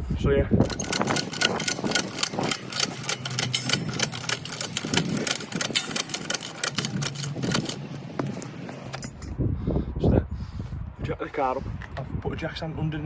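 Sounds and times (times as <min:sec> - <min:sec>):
car jack clicking: 0:00.6 - 0:09.3.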